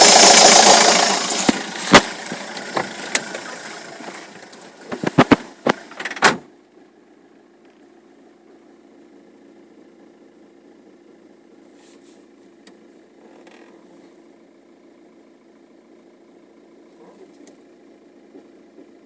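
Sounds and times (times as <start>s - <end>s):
engine running: 0.0s - 19.0s
sharp engine knocks: 4.8s - 6.5s.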